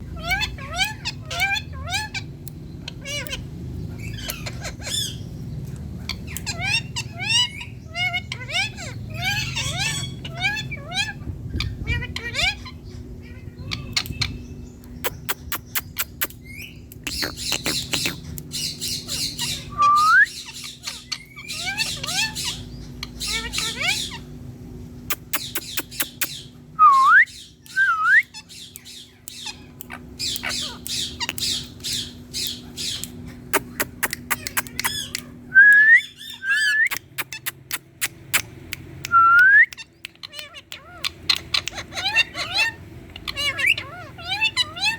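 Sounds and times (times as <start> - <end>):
parakeet squawking: 0.0 - 5.2, 6.1 - 14.4, 15.0 - 24.4, 25.1 - 26.6, 27.3 - 38.7, 39.7 - 44.9
parakeet clicks: 15.0 - 18.6, 25.1 - 26.4, 27.6 - 42.2.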